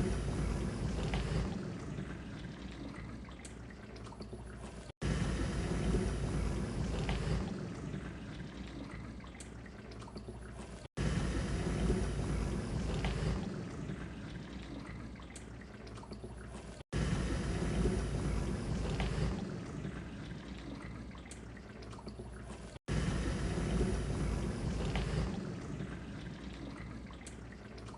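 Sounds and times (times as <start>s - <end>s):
dishwasher water splashing: 0.0s - 27.9s
low hum: 0.0s - 27.9s.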